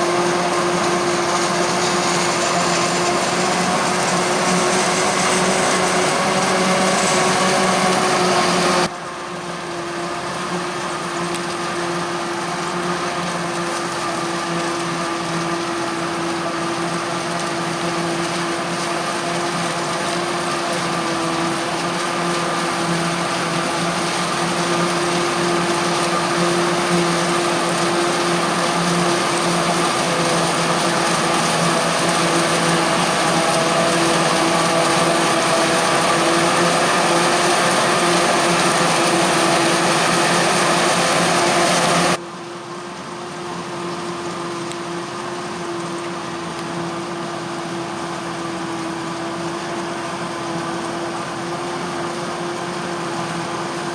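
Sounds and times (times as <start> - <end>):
diesel machinery drone: 0.0 - 42.3.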